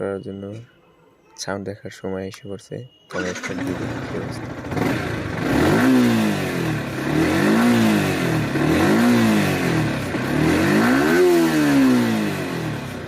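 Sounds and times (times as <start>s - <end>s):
motorcycle engine revving: 3.1s - 13.0s.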